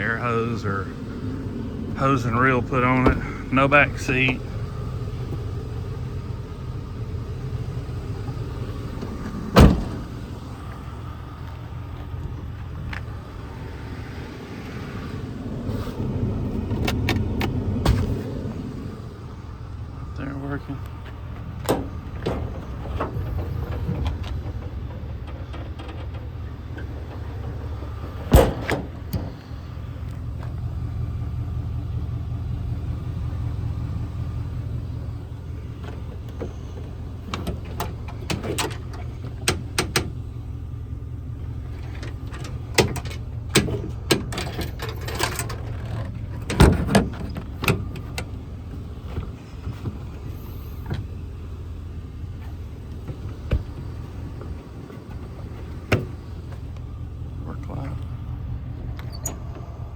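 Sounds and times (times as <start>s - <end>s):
engine idling: 0.0s - 59.9s
sharp clicks and knocks: 20.8s - 30.6s, 35.8s - 40.2s, 41.7s - 48.4s.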